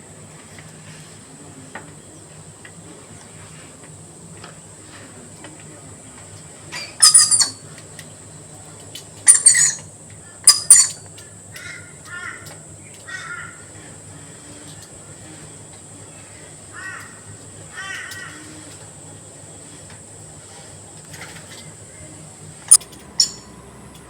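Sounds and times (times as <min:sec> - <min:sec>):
birds chirping: 0:00.0 - 0:24.0
birds screeching: 0:06.6 - 0:07.8, 0:09.3 - 0:24.0.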